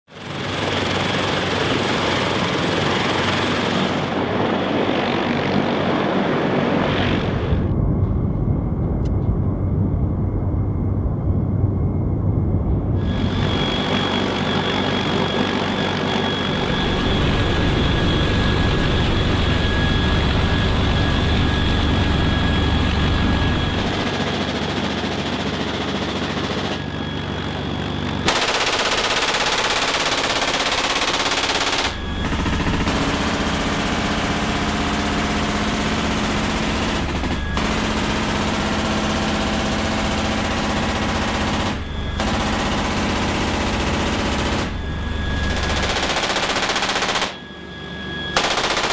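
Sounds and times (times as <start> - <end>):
helicopter rotors: 0.1 - 48.9
turbine engine whine: 0.1 - 48.9
machine gun firing rapid bursts: 28.3 - 44.7, 45.4 - 47.4, 48.4 - 48.9.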